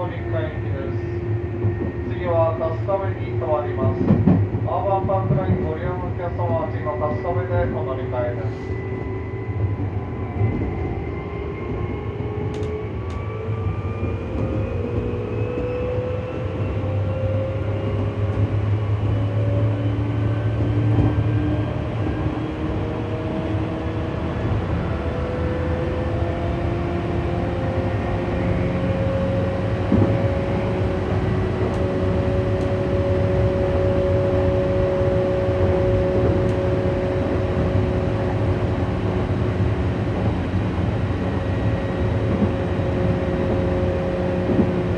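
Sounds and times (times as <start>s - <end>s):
wheels rumbling on track: 0.0s - 44.9s.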